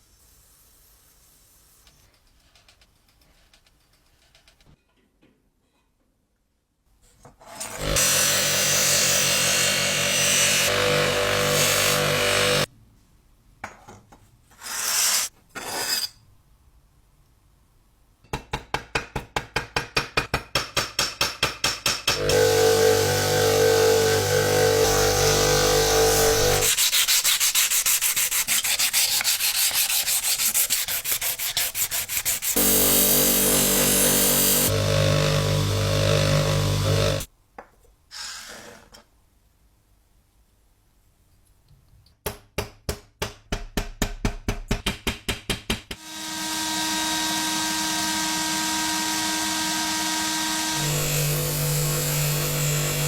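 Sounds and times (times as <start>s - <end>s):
sanding strokes: 22.4s - 37.3s.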